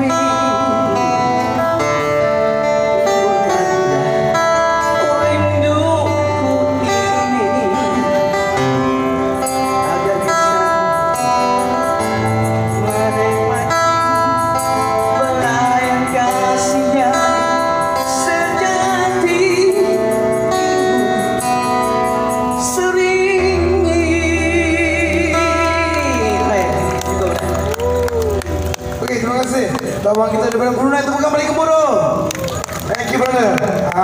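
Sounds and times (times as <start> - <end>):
person singing pop ballad: 0.0 - 28.7
band accompaniment: 0.0 - 33.9
low bass line: 23.1 - 30.1.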